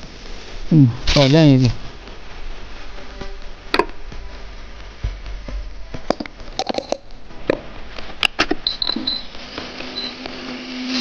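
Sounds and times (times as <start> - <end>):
faint low hum: 0.0 - 11.0
high electronic beep: 8.6 - 9.3, 9.9 - 10.2.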